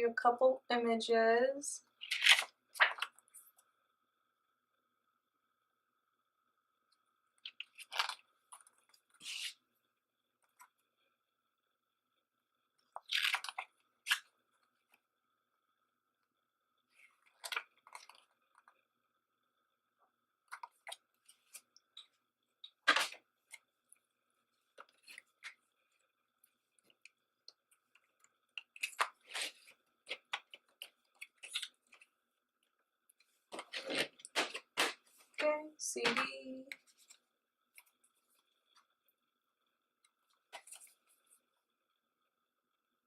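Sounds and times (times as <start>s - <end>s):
faint steady whine: 0.0s - 43.0s
paper inserts crinkling and rustling: 2.0s - 3.4s.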